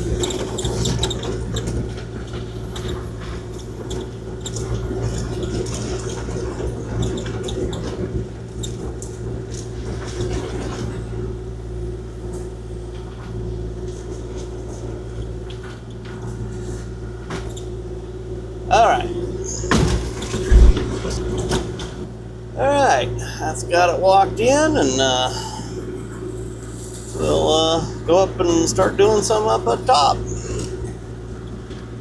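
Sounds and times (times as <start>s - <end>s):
tracks clicking and squeaking: 0.0s - 11.0s, 18.7s - 22.1s
excavator engine and hydraulics: 0.0s - 32.0s.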